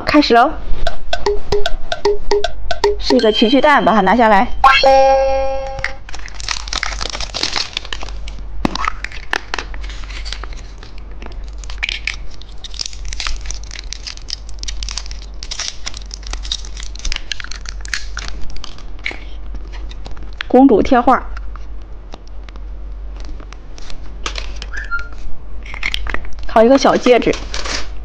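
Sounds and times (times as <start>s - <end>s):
plastic packaging crinkling and tearing: 5.9s - 20.5s, 23.1s - 28.0s
small clicks and crackles: 6.1s - 20.5s.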